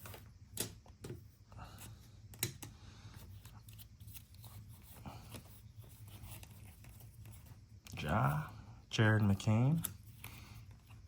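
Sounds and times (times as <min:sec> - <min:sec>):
low steady hum: 0:00.0 - 0:11.0
trading cards rustling and clicking: 0:02.4 - 0:08.3.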